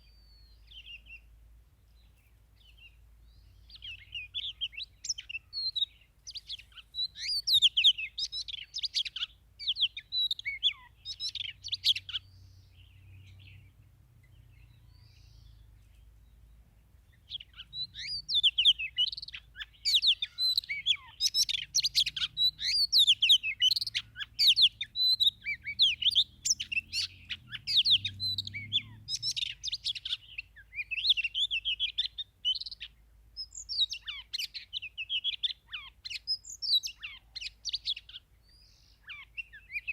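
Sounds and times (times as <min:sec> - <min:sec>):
bird singing whistles and chirps: 0:00.0 - 0:01.3, 0:02.1 - 0:39.9.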